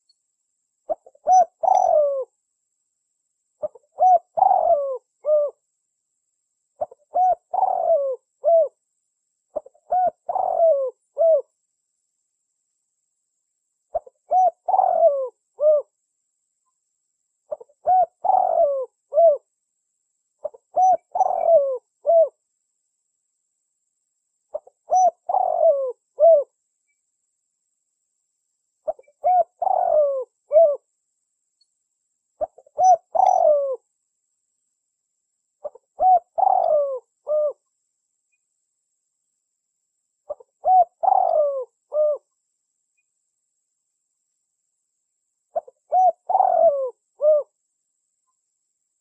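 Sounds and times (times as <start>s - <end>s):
dove cooing: 0.9s - 2.3s, 3.6s - 5.6s, 6.8s - 8.8s, 9.5s - 11.5s, 13.9s - 15.9s, 17.5s - 19.5s, 20.4s - 22.4s, 24.5s - 26.5s, 28.8s - 30.9s, 32.4s - 33.8s, 35.6s - 37.6s, 40.3s - 42.3s, 45.5s - 47.6s.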